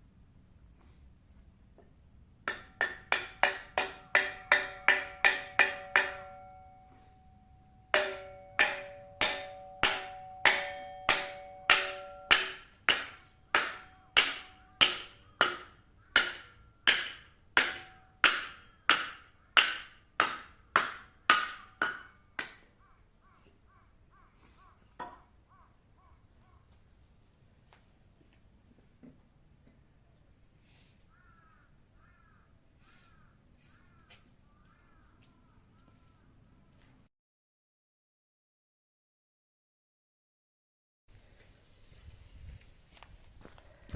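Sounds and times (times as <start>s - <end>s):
ringing tone: 4.7s - 12.4s.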